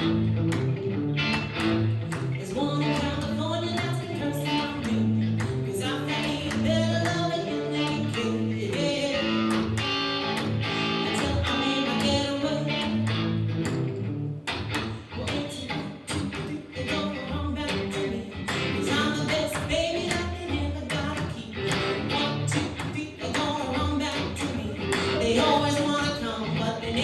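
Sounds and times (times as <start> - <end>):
rock guitar playing: 0.0 - 27.0
person singing: 1.2 - 13.5, 14.8 - 27.0.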